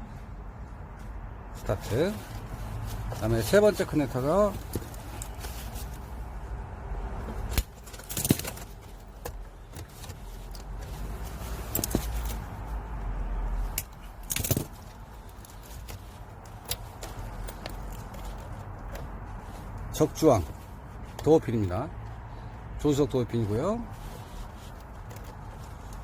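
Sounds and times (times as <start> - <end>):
wiring connectors clicking and rattling: 7.4 - 12.8, 13.6 - 22.2.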